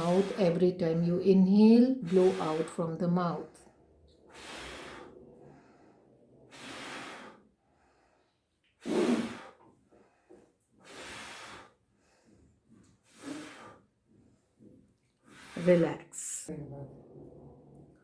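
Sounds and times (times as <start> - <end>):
forceful exhales through mouth: 4.3 - 8.2, 8.8 - 9.7, 10.8 - 11.8, 13.1 - 13.9.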